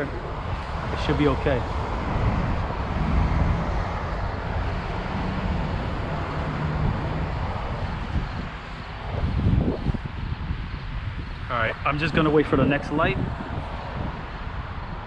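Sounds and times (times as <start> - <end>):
low engine hum: 0.0 - 11.1
highway traffic noise: 0.0 - 15.0.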